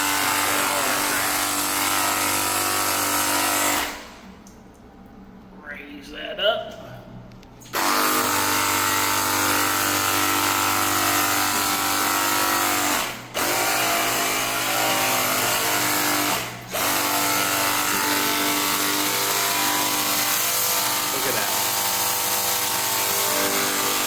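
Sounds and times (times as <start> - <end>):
pressure washer motor humming: 0.0 - 4.3, 7.7 - 24.0.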